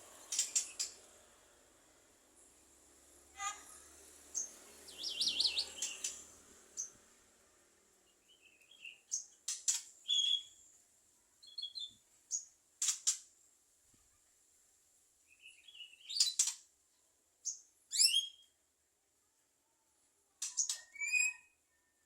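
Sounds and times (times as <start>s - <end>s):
myna bird calling: 4.4s - 6.2s.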